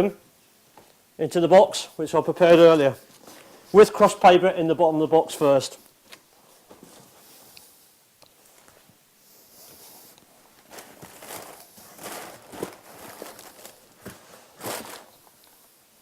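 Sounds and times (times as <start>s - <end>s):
paper rustling: 10.5s - 15.3s.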